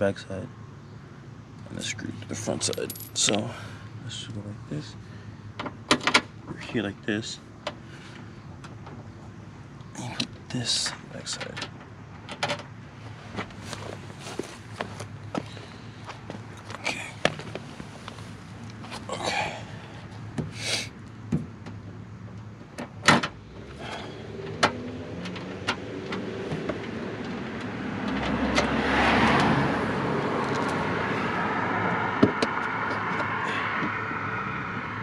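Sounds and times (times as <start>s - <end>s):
vehicle engine: 0.0s - 35.0s.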